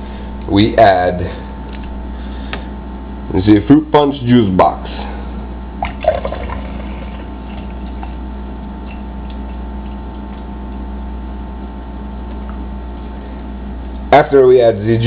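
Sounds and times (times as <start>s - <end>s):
juice pouring into a glass: 5.8s - 8.2s.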